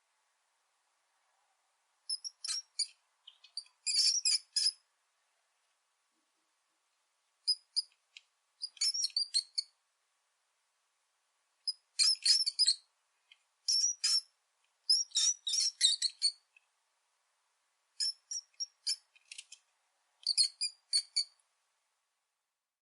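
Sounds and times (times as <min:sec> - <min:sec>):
rat squeaking: 0:02.1 - 0:04.8, 0:07.5 - 0:08.0, 0:08.6 - 0:09.8, 0:11.7 - 0:12.9, 0:13.7 - 0:14.3, 0:14.9 - 0:16.5, 0:18.0 - 0:19.6, 0:20.2 - 0:21.4.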